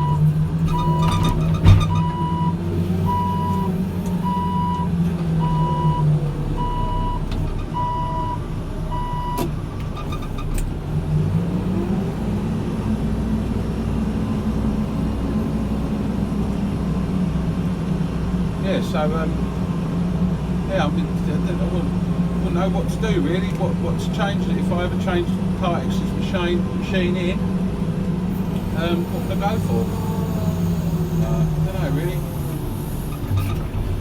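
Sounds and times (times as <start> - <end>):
reversing alarm beeping: 0.0 - 7.2, 7.8 - 9.4
diesel engine running: 0.0 - 34.0.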